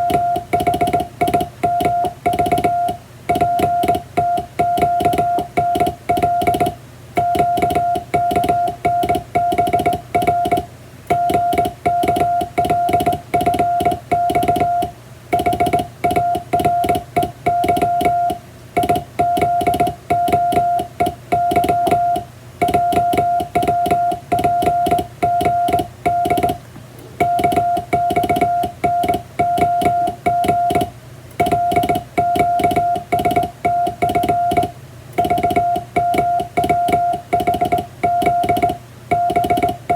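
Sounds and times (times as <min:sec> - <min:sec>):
morse code sidetone beeping: 0:00.0 - 0:26.6, 0:27.2 - 0:39.9
telegraph key clicks: 0:00.0 - 0:26.6.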